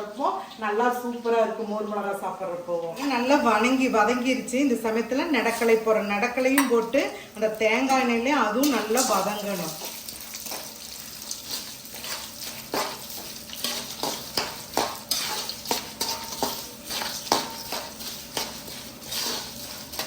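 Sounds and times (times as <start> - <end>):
peanuts sizzling in oil: 0.0 - 20.0
spoon scraping and knocking pan: 4.9 - 7.0, 7.8 - 20.0.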